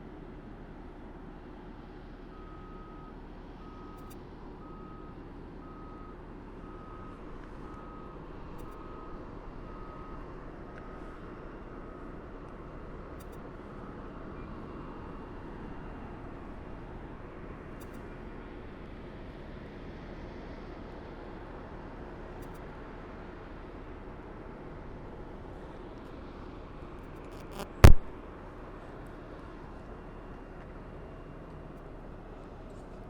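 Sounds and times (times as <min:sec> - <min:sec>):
vehicle reversing alarm beeping: 0:02.1 - 0:18.6.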